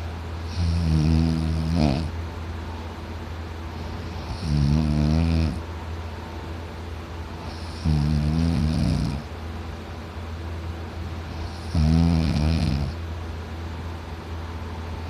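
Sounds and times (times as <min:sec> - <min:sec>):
low steady hum: 0:00.0 - 0:15.0
man snoring loudly: 0:00.5 - 0:02.1, 0:04.2 - 0:05.6, 0:07.5 - 0:09.3, 0:11.4 - 0:13.0.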